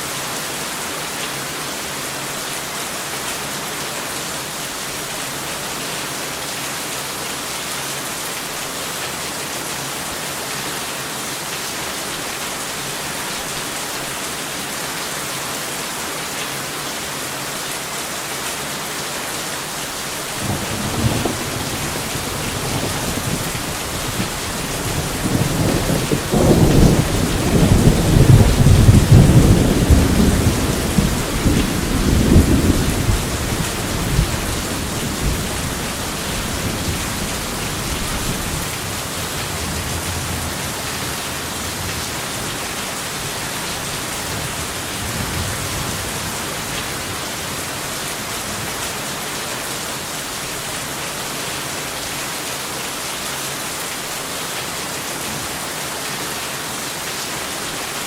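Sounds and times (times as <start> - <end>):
heavy rain hissing: 0.0 - 58.0
thunder rumble: 20.4 - 42.0.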